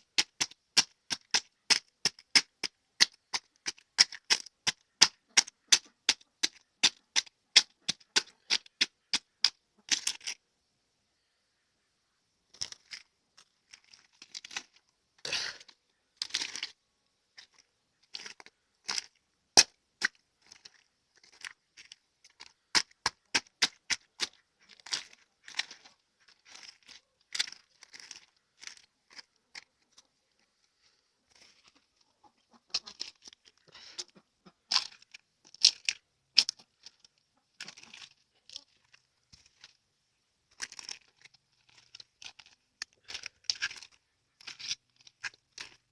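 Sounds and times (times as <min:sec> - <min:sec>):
duck bills clicking while pecking: 0:00.1 - 0:10.3, 0:32.2 - 0:36.7
crunchy scraping: 0:12.5 - 0:39.8, 0:40.5 - 0:45.9.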